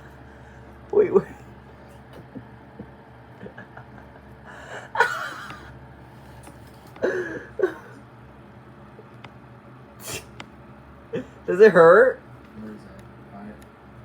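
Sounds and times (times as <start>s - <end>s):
ceiling fan humming: 0.0s - 14.0s.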